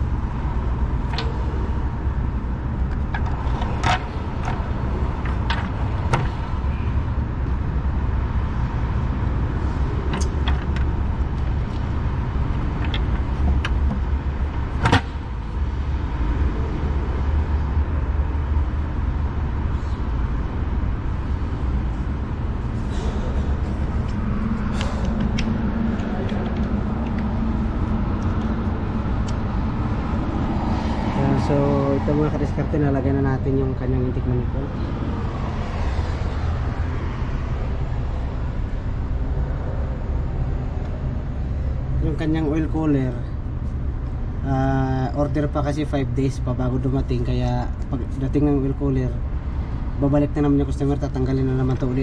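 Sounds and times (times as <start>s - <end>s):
low mechanical rumble: 0.0s - 52.0s.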